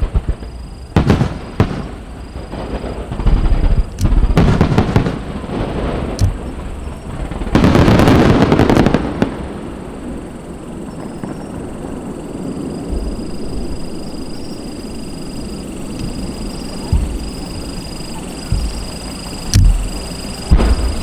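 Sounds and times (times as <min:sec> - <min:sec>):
rapid crackling firework bangs: 0:00.0 - 0:09.9, 0:15.5 - 0:21.0.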